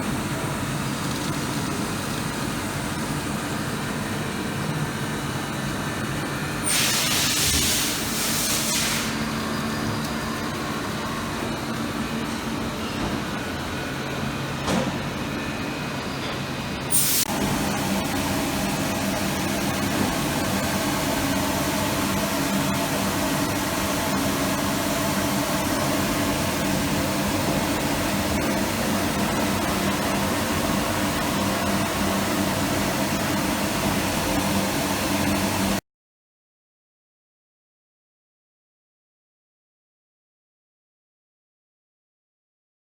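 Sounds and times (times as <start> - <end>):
lathe machine hum: 9.2 - 35.8.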